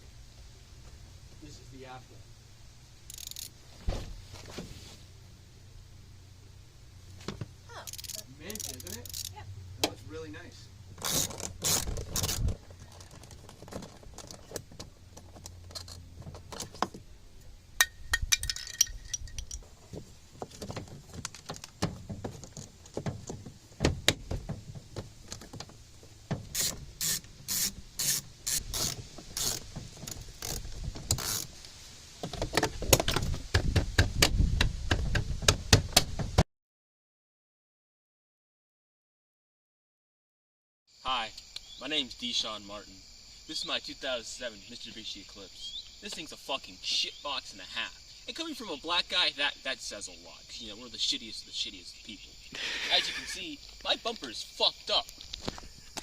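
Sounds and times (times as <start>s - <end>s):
sharp mechanical clicks and knocks: 3.1s - 3.5s.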